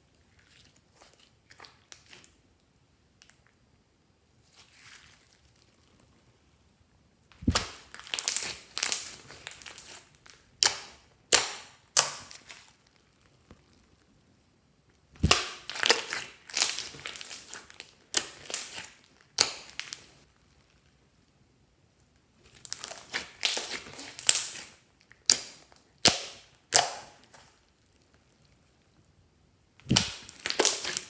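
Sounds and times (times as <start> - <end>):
sharp slime pops: 7.4 - 10.0, 10.6 - 12.6, 15.2 - 17.6, 22.8 - 24.7, 25.3 - 27.4, 29.8 - 31.0
slime crackling and popping: 7.4 - 13.6, 15.2 - 20.2, 22.5 - 27.6, 29.8 - 31.0.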